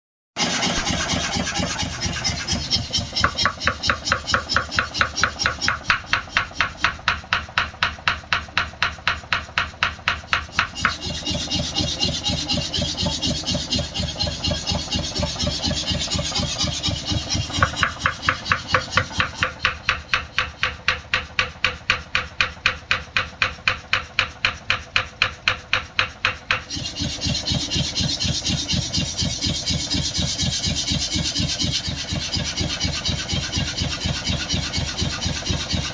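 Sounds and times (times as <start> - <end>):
power hammer blows: 0.4 - 35.9
power hammer machine running: 0.4 - 35.9.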